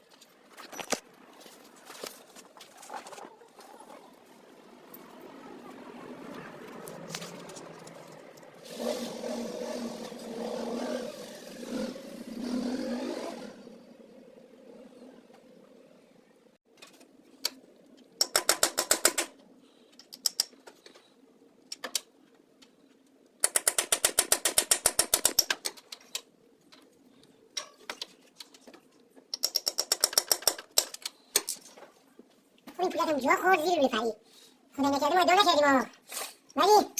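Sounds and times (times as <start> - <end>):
rapid mechanical clicking: 23.4 - 26.2.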